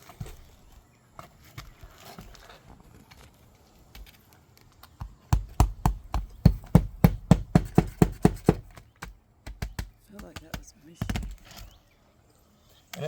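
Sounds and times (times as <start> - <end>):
hammer driving nails into shingles: 4.8 - 11.8.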